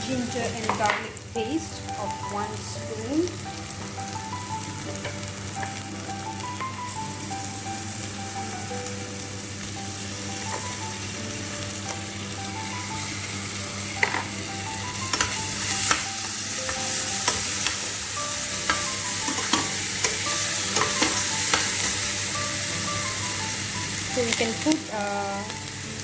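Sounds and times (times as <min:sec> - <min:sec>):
onions sizzling in hot oil: 0:00.0 - 0:26.0
spoon scraping a pan: 0:18.7 - 0:22.0.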